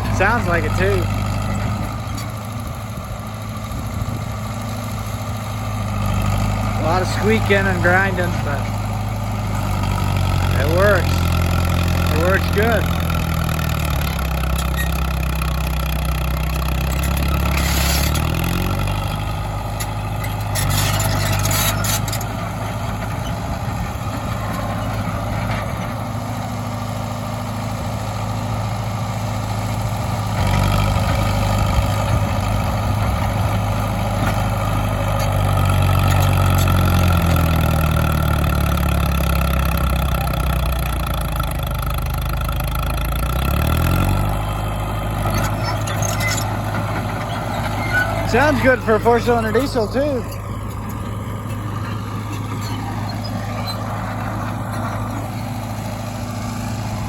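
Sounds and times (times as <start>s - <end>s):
machine squeaking and grinding: 0.0s - 2.4s, 9.6s - 23.6s, 35.1s - 41.5s, 45.0s - 55.9s
bulldozer diesel engine under load: 0.0s - 57.0s.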